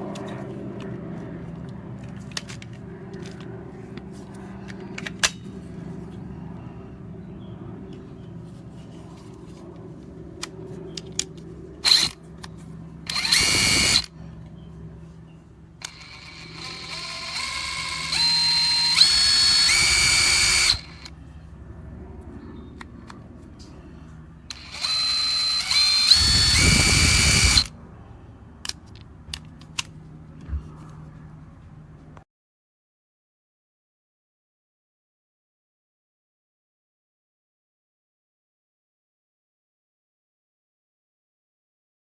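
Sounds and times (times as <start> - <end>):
impact wrench whining: 13.1 - 14.1, 15.8 - 21.1, 24.5 - 27.7.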